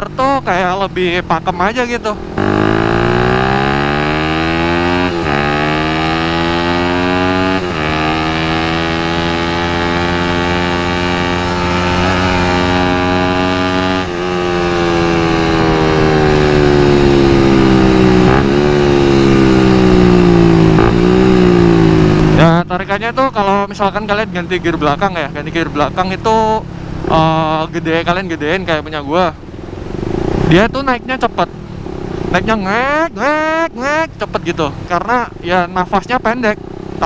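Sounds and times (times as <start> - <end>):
motorcycle engine pulling: 2.1 - 22.6.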